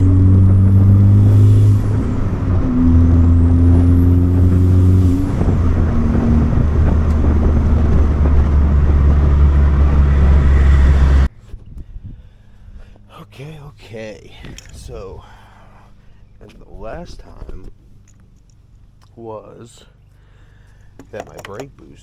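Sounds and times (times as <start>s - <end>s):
car engine under load: 0.0s - 11.7s.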